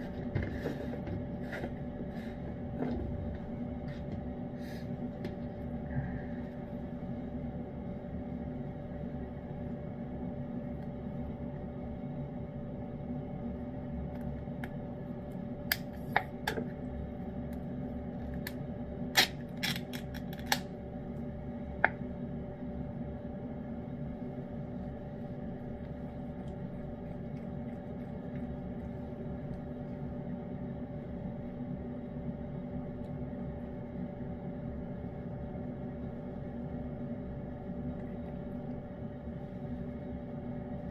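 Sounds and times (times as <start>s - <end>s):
steady low hum: 0.0s - 40.9s
cat chewing and licking: 24.3s - 31.4s.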